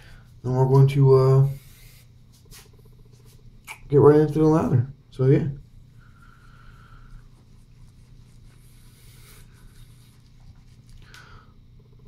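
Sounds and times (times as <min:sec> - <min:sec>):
steady low hum: 0:00.0 - 0:12.0
shaving brush scratching on soap: 0:07.2 - 0:11.0.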